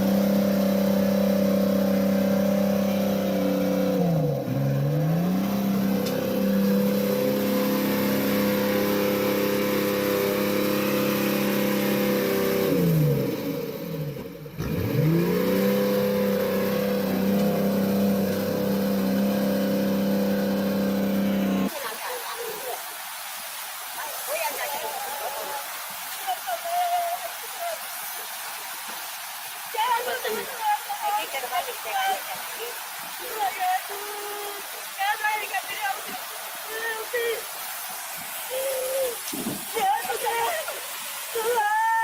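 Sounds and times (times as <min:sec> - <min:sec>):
engine running at high revs: 0:00.0 - 0:21.7.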